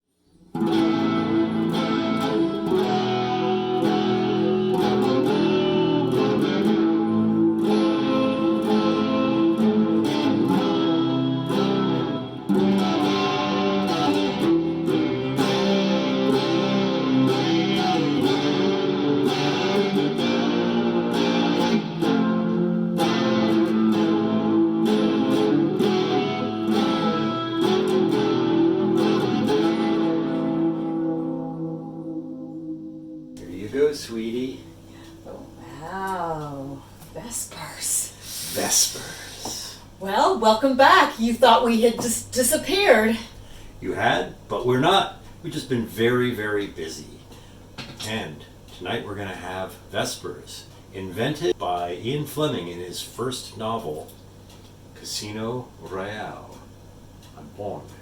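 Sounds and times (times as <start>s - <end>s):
plucked guitar music: 0.5s - 33.5s.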